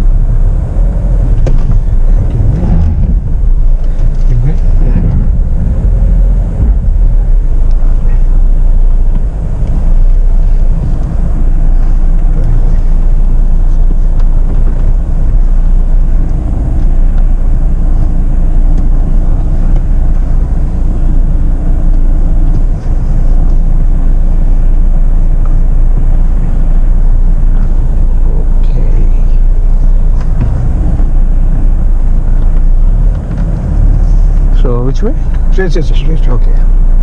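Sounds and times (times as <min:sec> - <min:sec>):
faint engine hum: 0:00.0 - 0:37.0
vehicle low rumble: 0:00.0 - 0:37.0.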